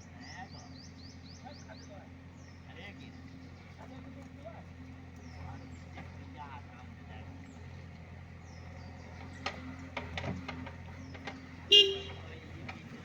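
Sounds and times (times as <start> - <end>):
diesel engine running: 0.0 - 13.0
vehicle horn toot: 11.7 - 12.3.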